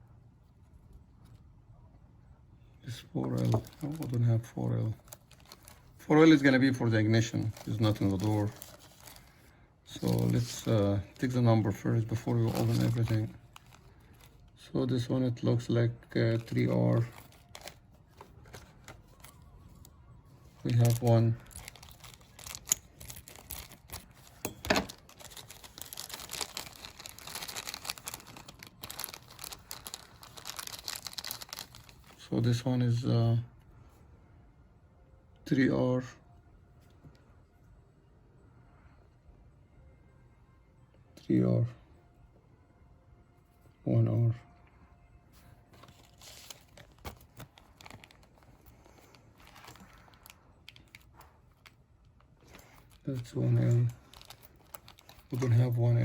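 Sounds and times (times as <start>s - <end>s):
rustling crinkling: 2.8s - 32.6s, 45.3s - 56.0s
soft rustle: 7.2s - 11.3s.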